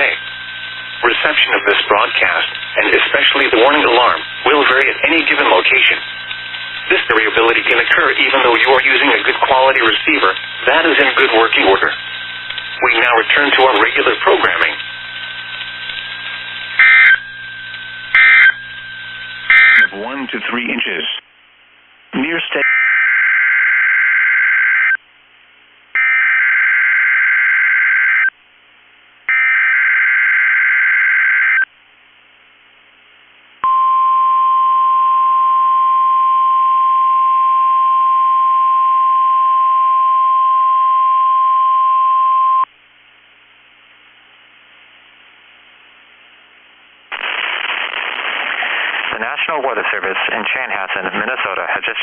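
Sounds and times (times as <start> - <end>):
announcer speaking: 0.0 - 0.2, 1.0 - 6.0, 6.9 - 12.0, 12.8 - 14.8, 19.7 - 21.2, 22.1 - 22.8
buzzy digital header bursts: 0.0 - 17.2, 18.1 - 20.2
steady warning alarm tone: 0.0 - 20.1, 26.0 - 28.3, 29.3 - 31.7.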